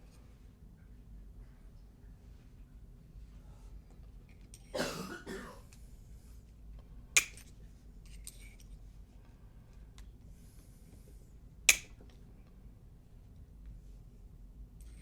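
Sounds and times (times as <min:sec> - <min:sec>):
person coughing: 0:04.7 - 0:05.7
padlock clicking: 0:07.2 - 0:07.5.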